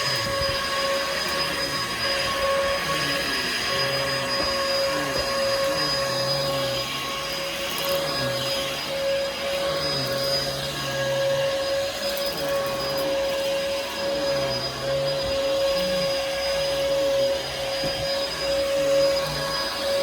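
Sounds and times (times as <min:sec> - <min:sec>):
vacuum cleaner running: 0:00.0 - 0:20.0.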